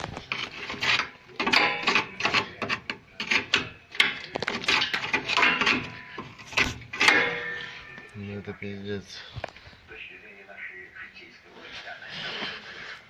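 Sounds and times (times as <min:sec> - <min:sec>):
scraping on rusted metal: 0:00.0 - 0:07.9.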